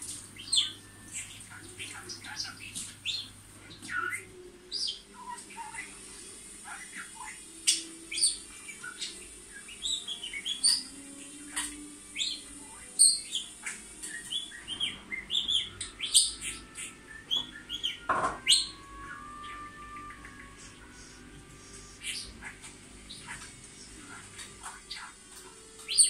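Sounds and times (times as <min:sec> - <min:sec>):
budgerigar warbling chatter: 0:06.6 - 0:19.2, 0:22.0 - 0:25.2.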